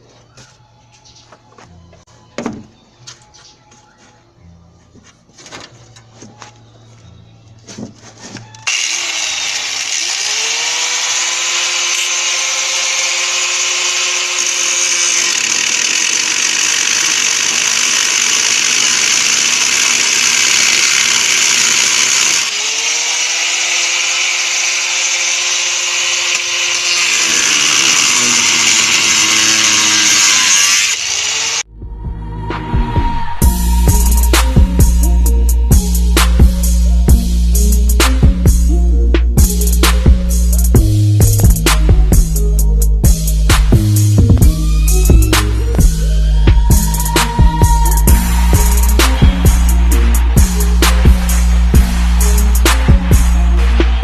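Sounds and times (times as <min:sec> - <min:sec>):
angle grinder cutting sheet metal: 0:08.7 - 0:31.7, 0:46.5 - 0:54.0.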